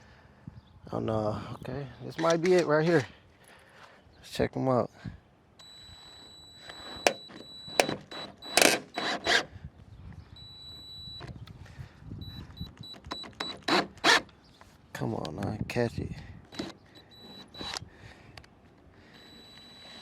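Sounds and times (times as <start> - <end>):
drill motor whining: 5.6 - 9.5, 16.5 - 17.8, 19.0 - 20.0.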